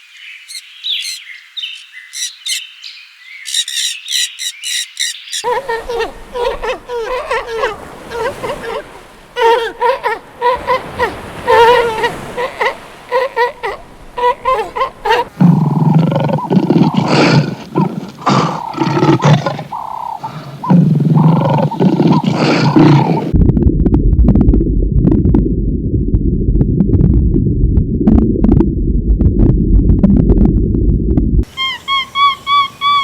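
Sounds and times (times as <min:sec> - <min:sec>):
rough animal calls: 0:00.5 - 0:02.6, 0:03.4 - 0:23.3, 0:31.5 - 0:33.0
low rumbling noise: 0:23.4 - 0:31.4.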